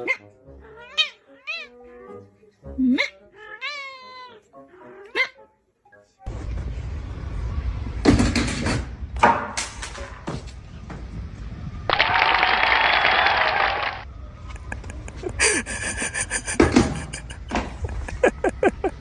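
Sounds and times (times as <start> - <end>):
cat meowing: 0.0 - 2.0, 3.0 - 4.4
loud sudden noises: 11.7 - 14.0.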